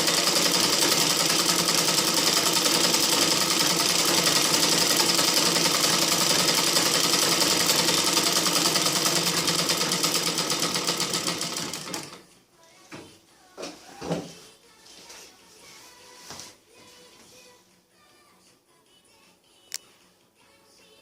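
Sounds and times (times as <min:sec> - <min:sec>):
sewing machine clatter: 0:00.0 - 0:12.2.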